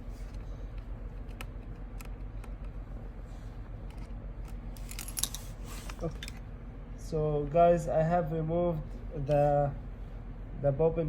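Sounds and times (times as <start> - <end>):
steady low hum: 0.0 - 11.0
metal parts clinking: 4.8 - 6.4.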